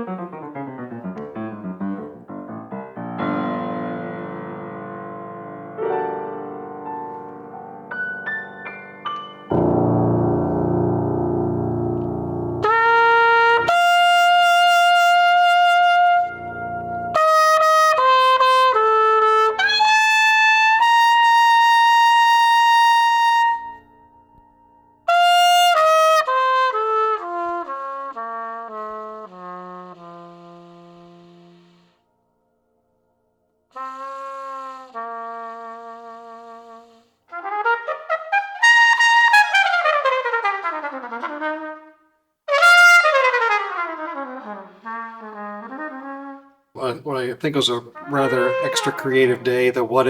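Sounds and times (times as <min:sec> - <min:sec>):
jazz trumpet: 0:05.4 - 0:24.0, 0:25.0 - 0:32.1, 0:33.7 - 0:50.0
sustained chord: 0:09.5 - 0:13.8.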